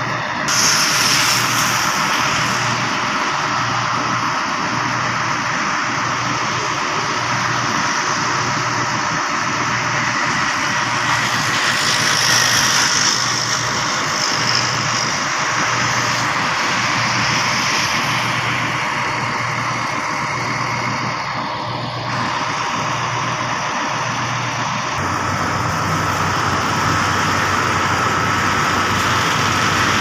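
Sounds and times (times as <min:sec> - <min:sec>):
concrete pump engine humming: 0:00.0 - 0:30.0
high hiss: 0:00.5 - 0:04.4.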